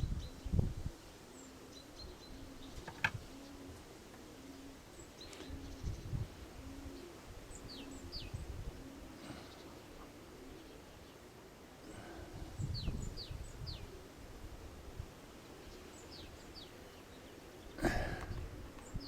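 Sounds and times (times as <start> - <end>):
wind gusting on microphone: 0.0 - 1.0, 5.4 - 9.0, 12.2 - 15.2, 17.8 - 19.0
small birds chirping: 0.0 - 14.2, 14.9 - 19.0
pigeons cooing: 0.0 - 19.0.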